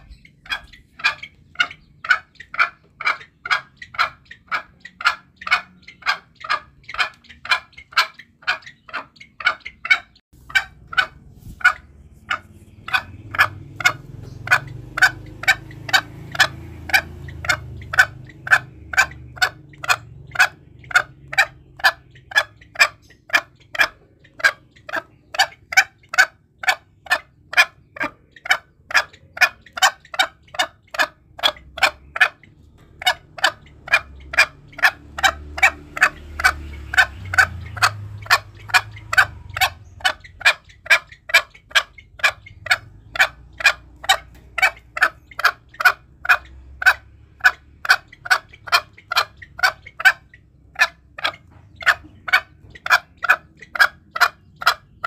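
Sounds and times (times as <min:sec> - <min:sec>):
junglefowl calling: 0:00.0 - 0:55.0
faint low rumble: 0:10.4 - 0:25.8.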